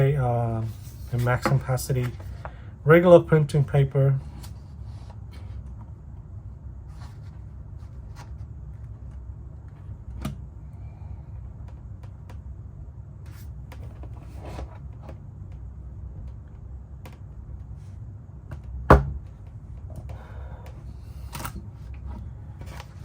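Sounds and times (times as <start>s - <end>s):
steady low hum: 0.0s - 23.0s
sharp knock: 18.9s - 19.2s.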